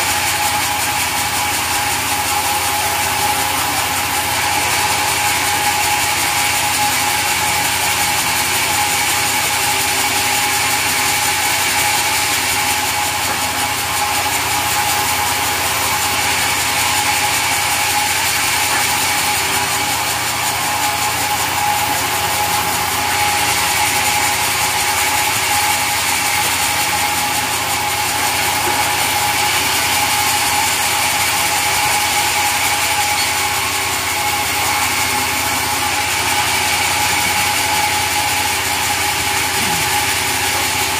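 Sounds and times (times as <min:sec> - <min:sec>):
sawmill saw whining: 0:00.0 - 0:40.9
machinery clattering: 0:00.1 - 0:40.9.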